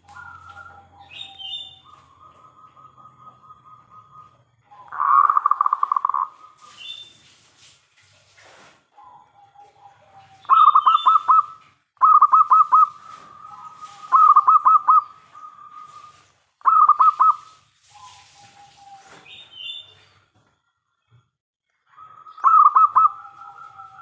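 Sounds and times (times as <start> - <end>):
dove cooing: 0.0 - 6.7, 9.0 - 19.2, 21.9 - 24.0.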